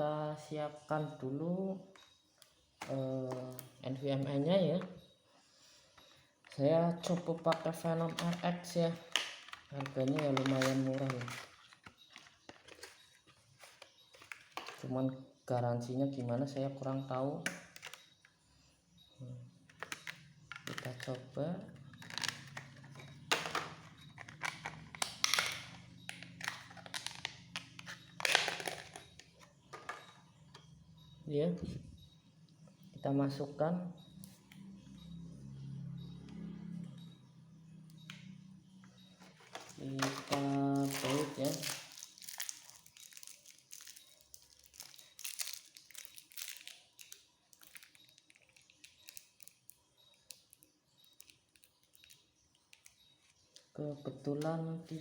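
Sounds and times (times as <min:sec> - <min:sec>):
plastic packaging rustling: 0:06.4 - 0:14.9, 0:19.7 - 0:30.1, 0:39.2 - 0:50.4.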